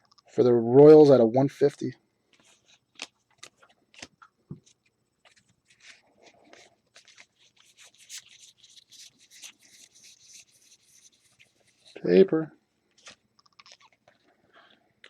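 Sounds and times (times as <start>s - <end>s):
cards rustling: 2.3s - 12.1s.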